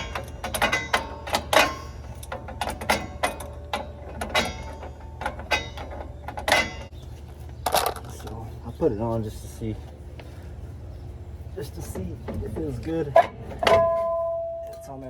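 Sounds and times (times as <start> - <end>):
metal clicks and clanks of tools: 0.0 - 6.9.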